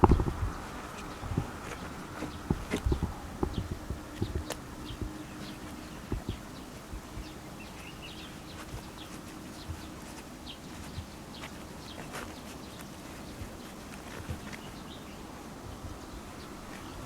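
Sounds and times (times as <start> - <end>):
soft low knocks: 0.0 - 7.3
steady low hum: 0.0 - 17.0
bird chirps: 0.1 - 12.9.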